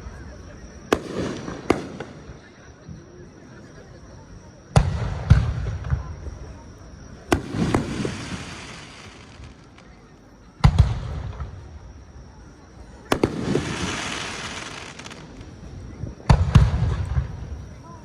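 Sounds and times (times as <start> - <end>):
firework hissing crackle: 7.3 - 10.2, 13.0 - 17.5.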